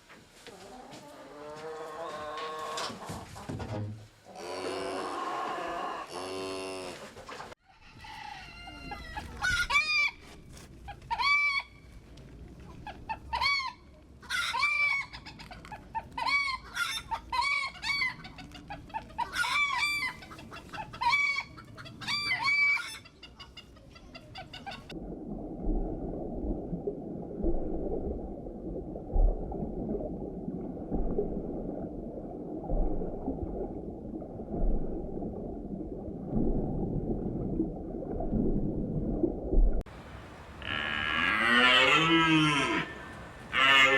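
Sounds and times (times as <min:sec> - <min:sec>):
chickens clucking and squawking: 0:07.0 - 0:10.2, 0:10.9 - 0:11.7, 0:12.8 - 0:24.9.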